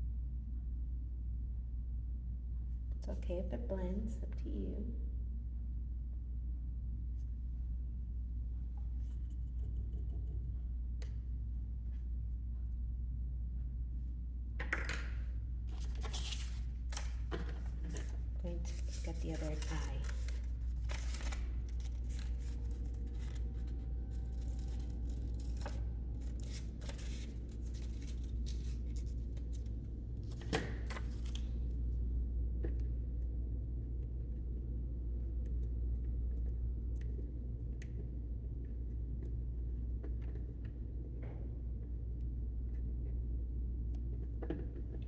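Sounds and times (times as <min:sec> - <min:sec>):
steady low hum: 0:00.0 - 0:45.0.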